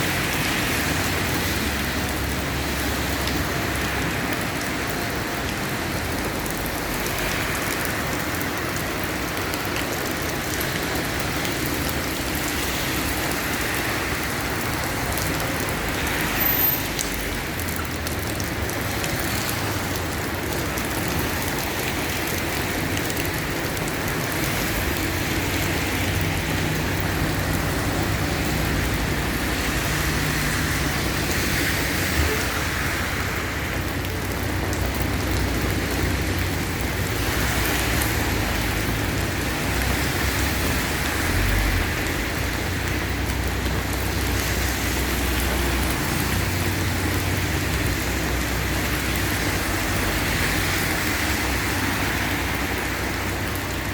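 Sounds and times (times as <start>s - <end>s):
rain pattering on surfaces: 0.0s - 53.9s.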